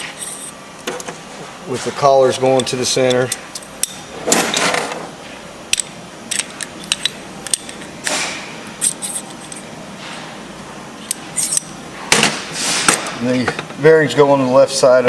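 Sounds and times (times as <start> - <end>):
metal parts clinking: 8.8 - 9.6, 11.4 - 11.7.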